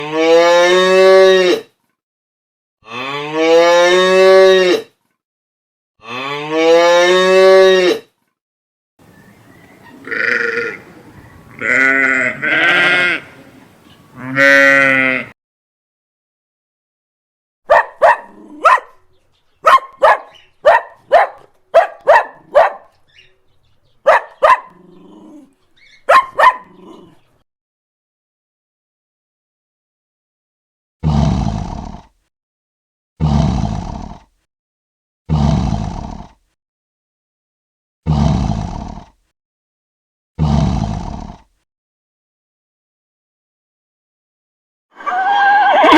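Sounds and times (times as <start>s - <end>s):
cow mooing: 9.2s - 15.4s
dog barking: 17.7s - 19.0s, 19.6s - 23.0s, 24.0s - 24.8s, 26.0s - 26.9s.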